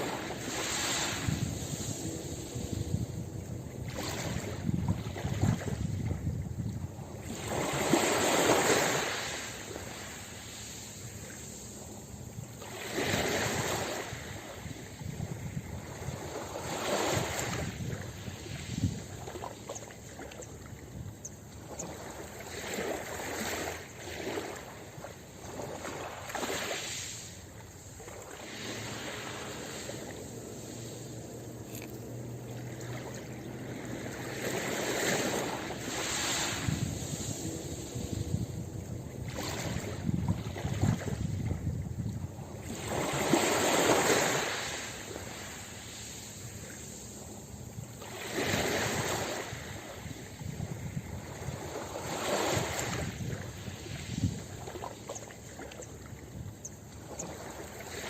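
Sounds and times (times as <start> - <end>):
ocean surf washing onto beach: 0.0 - 19.4, 25.6 - 55.0.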